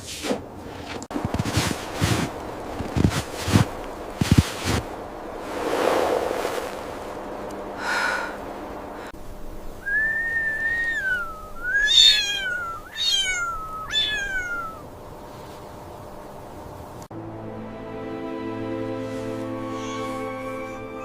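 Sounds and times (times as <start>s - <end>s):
brief rush of noise: 5.4s - 8.6s
kitten meowing: 10.9s - 14.8s.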